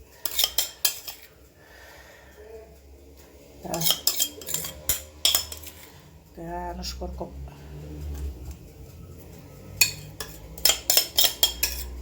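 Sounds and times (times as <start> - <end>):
metal utensils clinking on dishes: 0.0 - 1.6, 3.2 - 6.3, 7.9 - 12.0.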